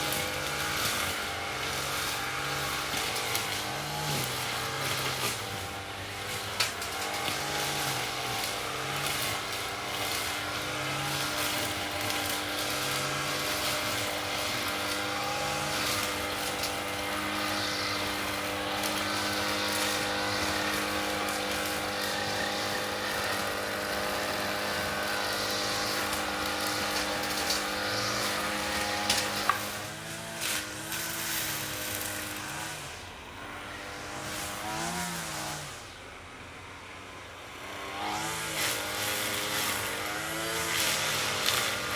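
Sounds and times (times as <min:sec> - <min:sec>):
lawn mower engine running: 0:00.0 - 0:41.9.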